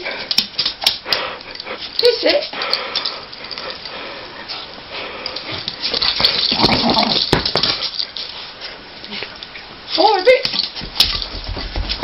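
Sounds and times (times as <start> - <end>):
dog scuffling: 0.1 - 12.0
dog growling: 5.0 - 7.4.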